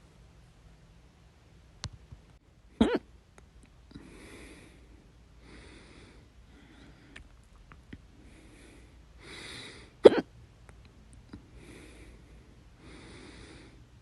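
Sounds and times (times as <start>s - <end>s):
person hiccupping: 2.8s - 3.1s.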